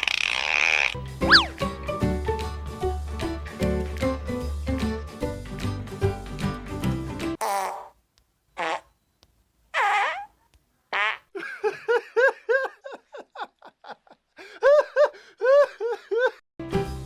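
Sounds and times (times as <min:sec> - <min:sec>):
fart sound effects: 0:00.0 - 0:01.5, 0:07.4 - 0:08.0, 0:08.6 - 0:08.9.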